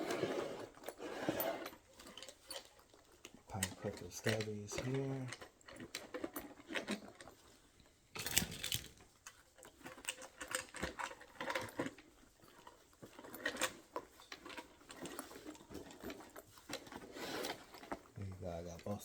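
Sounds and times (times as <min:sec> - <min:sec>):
tools rattling: 0:08.2 - 0:09.1.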